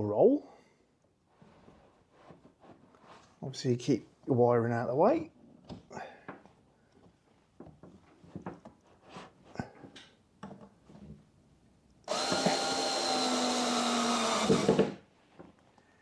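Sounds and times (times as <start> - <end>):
electric drill running: 12.1 - 14.9.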